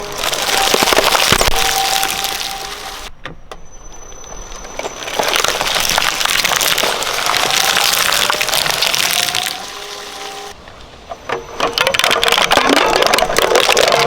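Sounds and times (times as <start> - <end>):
shredder blades crushing material: 0.0 - 3.1, 4.8 - 10.6, 11.6 - 14.0.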